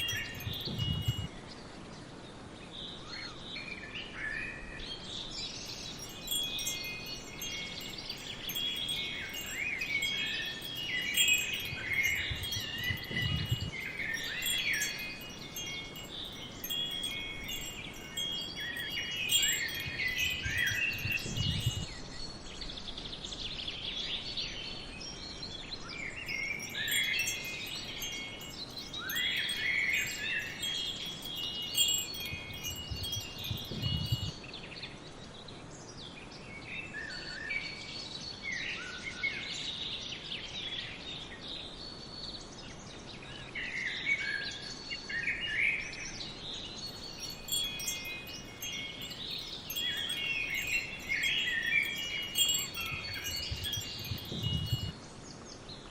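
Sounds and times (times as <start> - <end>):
birds chirping: 0.0 - 1.3, 5.5 - 22.3, 26.2 - 34.3, 46.7 - 55.0
wind chimes ringing: 0.0 - 1.4, 5.4 - 22.4, 26.1 - 34.4, 46.0 - 55.0.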